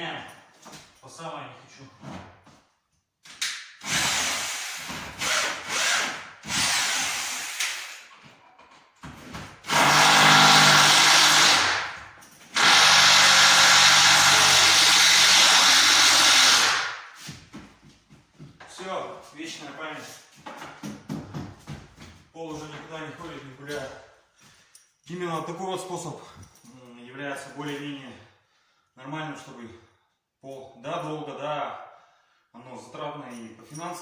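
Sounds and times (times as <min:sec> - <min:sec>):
rotary hammer drilling: 0:03.8 - 0:08.0, 0:09.7 - 0:17.0.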